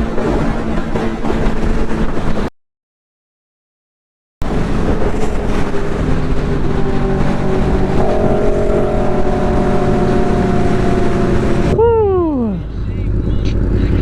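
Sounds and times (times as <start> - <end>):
road and wind noise: 0.0 - 2.5, 4.4 - 14.0
motorcycle engine running: 4.7 - 14.0.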